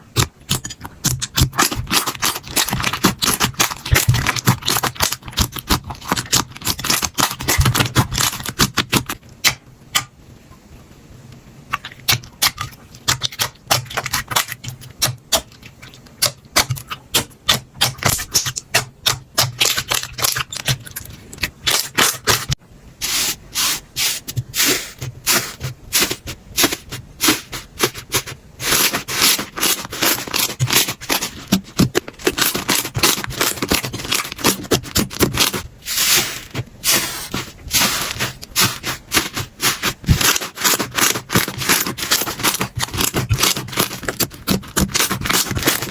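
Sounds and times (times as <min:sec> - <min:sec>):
hands squeezing sticky slime: 0:00.1 - 0:09.2, 0:11.7 - 0:23.8, 0:24.5 - 0:45.9.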